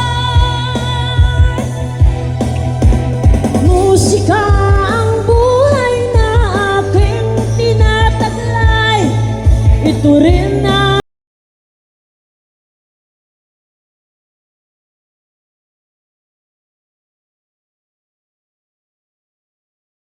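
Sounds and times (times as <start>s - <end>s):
pop song over a sound system: 0.0s - 11.0s.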